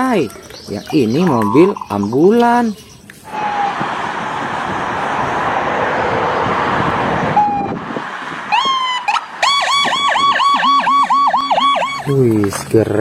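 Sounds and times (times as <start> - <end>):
toy ambulance electronic siren: 7.4 - 7.7, 8.6 - 12.1.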